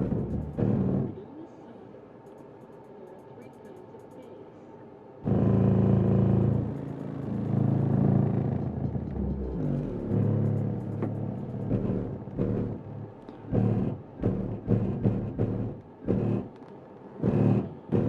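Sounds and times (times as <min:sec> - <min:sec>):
subwoofer playing deep bass music: 0:00.0 - 0:01.1, 0:05.3 - 0:16.5, 0:17.2 - 0:18.0.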